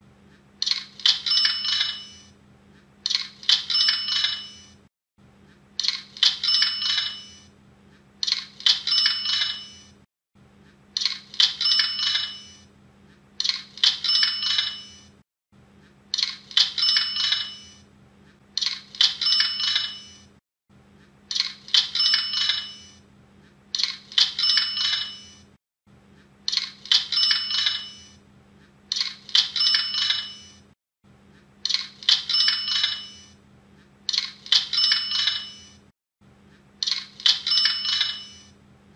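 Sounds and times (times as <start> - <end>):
cash register ka-ching: 0.6 - 2.4, 3.1 - 4.8, 5.8 - 7.5, 8.2 - 10.0, 11.0 - 12.7, 13.4 - 15.2, 16.2 - 17.8, 18.6 - 20.4, 21.3 - 23.0, 23.8 - 25.5, 26.5 - 28.2, 28.9 - 30.7, 31.7 - 33.4, 34.1 - 35.9, 36.8 - 38.6.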